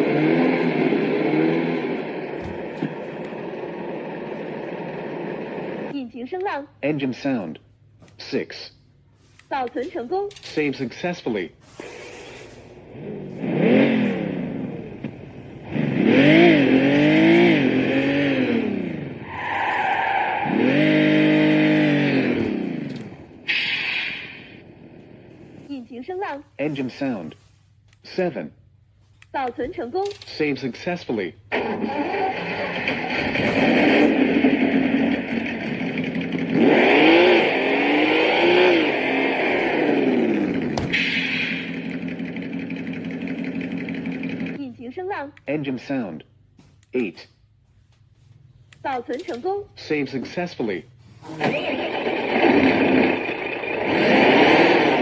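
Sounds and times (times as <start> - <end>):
simulated car engine revving: 0.0 - 5.9, 11.8 - 25.7, 30.8 - 44.6, 49.2 - 55.0.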